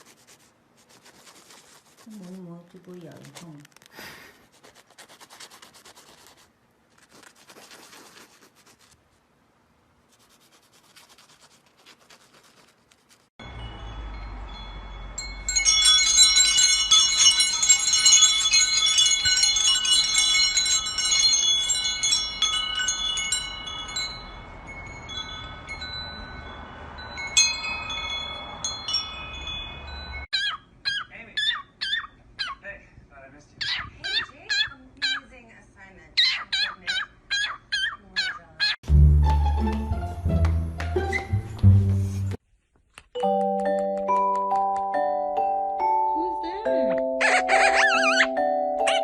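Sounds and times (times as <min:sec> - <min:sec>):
faint scratching and rustling: 0:00.0 - 0:09.2, 0:10.1 - 0:13.3
chimes ringing: 0:13.4 - 0:30.3.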